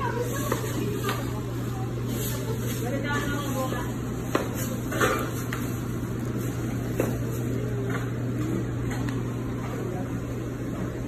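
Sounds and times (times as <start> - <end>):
utensils and containers clinking: 0.0 - 7.9.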